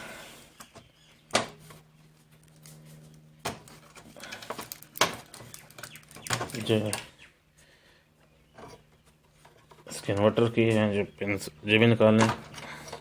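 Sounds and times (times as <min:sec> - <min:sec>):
faint steady hum: 0:00.0 - 0:13.0
clicks and knocks of handled parts: 0:02.4 - 0:07.1.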